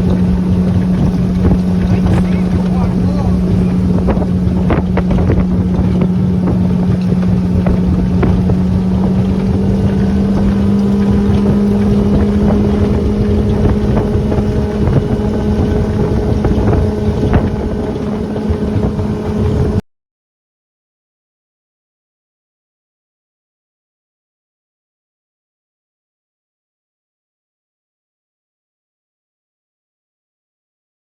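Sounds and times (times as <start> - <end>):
motor humming: 0.0 - 19.8
wind on microphone: 0.0 - 19.8.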